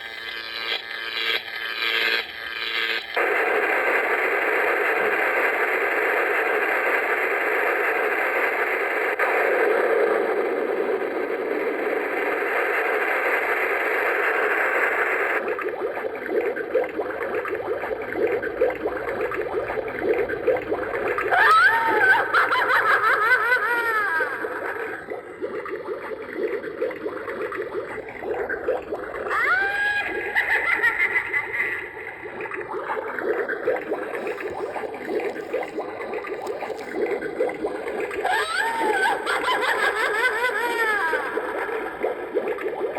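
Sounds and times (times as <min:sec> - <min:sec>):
spooky hissing gurgling effect: 0:10.7 - 0:42.9
laugh-like sound wavering pitch: 0:21.0 - 0:25.3, 0:27.8 - 0:34.8, 0:38.0 - 0:42.4.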